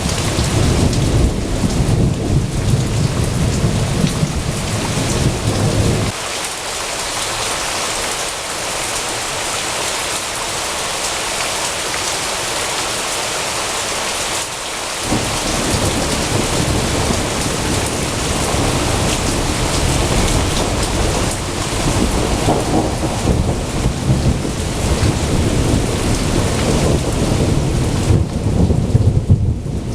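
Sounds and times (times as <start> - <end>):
thunder rumbling: 0.0 - 6.2, 15.0 - 29.9
steady rain: 0.0 - 29.9.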